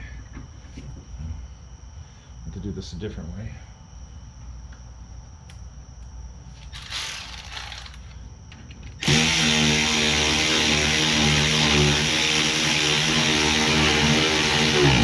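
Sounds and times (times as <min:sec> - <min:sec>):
power tool motor running: 0:06.7 - 0:08.1, 0:09.0 - 0:15.0.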